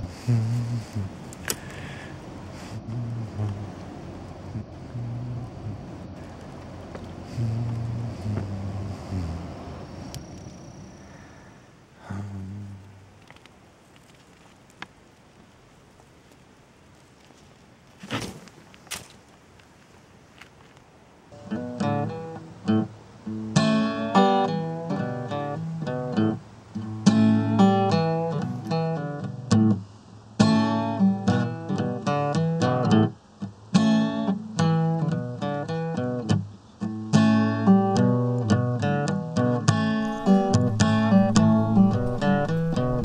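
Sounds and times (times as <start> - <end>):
acoustic guitar blues picking: 21.4 - 29.8, 30.4 - 43.0.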